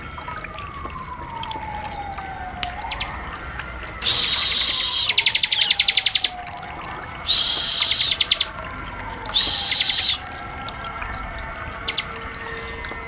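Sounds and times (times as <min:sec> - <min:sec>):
faint dripping water: 0:00.0 - 0:13.0
bird buzzy calls: 0:04.0 - 0:06.4, 0:07.3 - 0:08.5, 0:09.3 - 0:10.3, 0:11.8 - 0:12.1.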